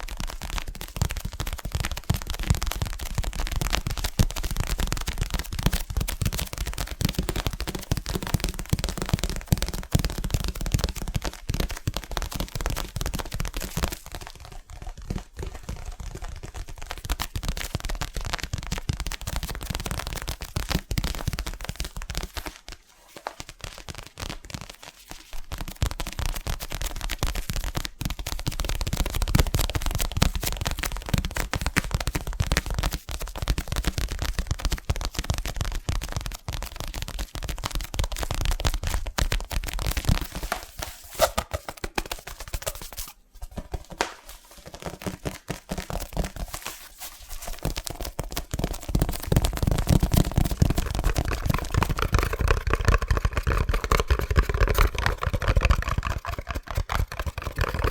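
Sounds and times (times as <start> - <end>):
fast fingertip tapping: 47.5 - 57.9.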